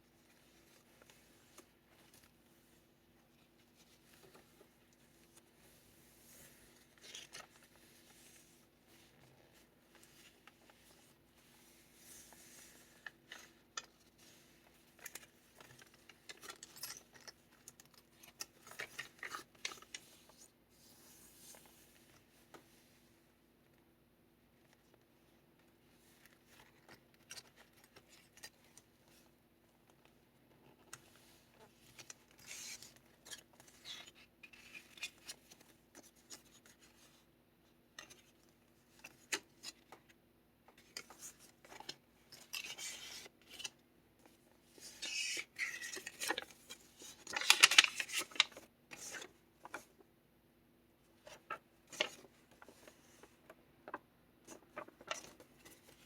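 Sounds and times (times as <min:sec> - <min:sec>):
paper pages rustling: 0:03.4 - 0:20.4, 0:30.0 - 0:37.2, 0:40.8 - 0:50.0, 0:51.2 - 0:56.0.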